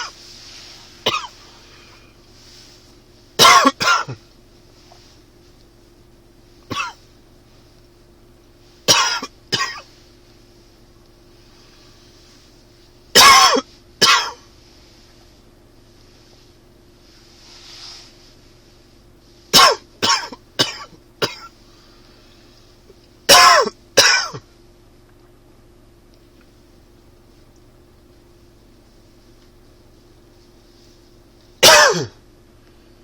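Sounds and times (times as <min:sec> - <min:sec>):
man coughing: 0:01.0 - 0:01.4, 0:03.4 - 0:04.2, 0:06.7 - 0:07.0, 0:08.9 - 0:09.8, 0:13.2 - 0:14.4, 0:19.5 - 0:21.5, 0:23.3 - 0:24.4, 0:31.6 - 0:32.2.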